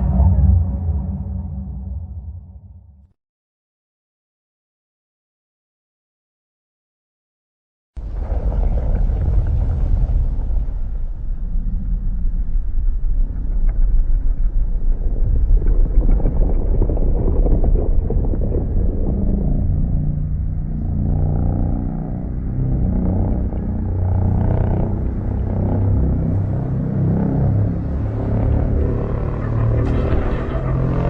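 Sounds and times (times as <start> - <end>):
monster growling rumble: 8.0 - 31.0.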